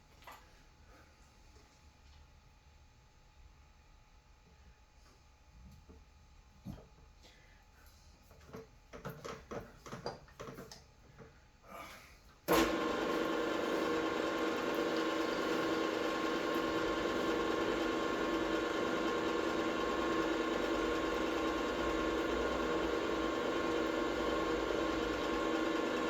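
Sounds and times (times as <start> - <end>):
milling machine motor running: 12.5 - 26.0.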